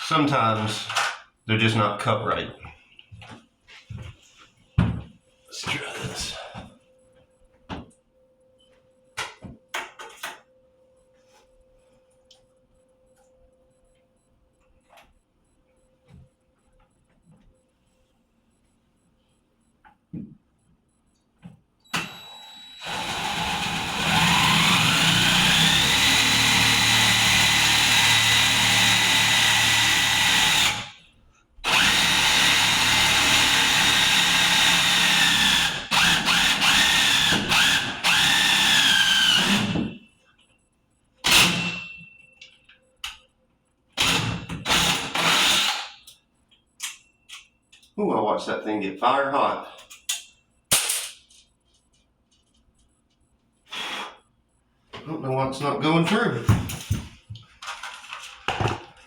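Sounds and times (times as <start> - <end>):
power drill whining: 21.9 - 31.0, 31.6 - 40.0, 44.0 - 46.0.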